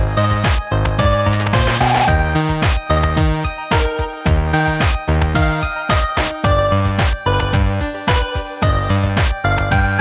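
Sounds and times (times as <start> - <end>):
instrumental electronic music: 1.6 - 2.2.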